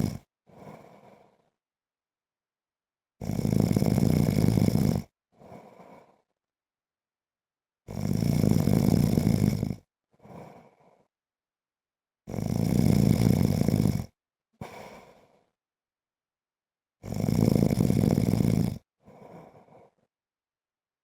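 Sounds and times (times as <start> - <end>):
man snoring: 0.0 - 1.3, 3.2 - 6.2, 7.9 - 11.1, 12.3 - 15.3, 17.0 - 20.1
faint breath out: 0.0 - 1.6, 5.4 - 6.4, 14.6 - 15.6.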